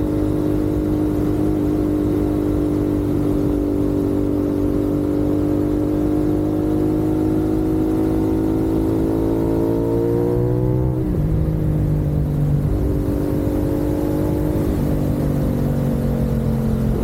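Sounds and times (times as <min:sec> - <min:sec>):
motorcycle engine accelerating: 0:00.0 - 0:17.0
wind rushing over microphone: 0:08.2 - 0:17.0.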